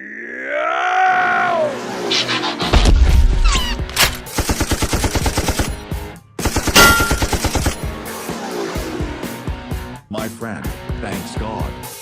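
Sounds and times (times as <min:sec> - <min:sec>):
automatic gunfire: 0:04.0 - 0:05.8, 0:06.4 - 0:07.9.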